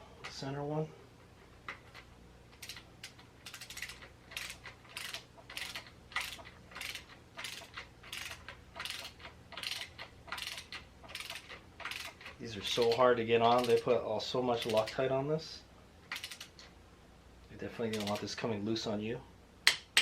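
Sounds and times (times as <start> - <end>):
hand ratchet clicking: 2.6 - 13.9, 14.6 - 15.0, 16.1 - 16.7, 17.9 - 18.3.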